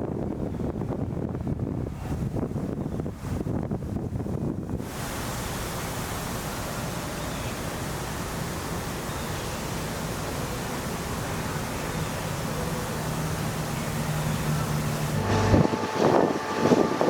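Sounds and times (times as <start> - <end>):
heavy rain pouring: 4.8 - 17.0.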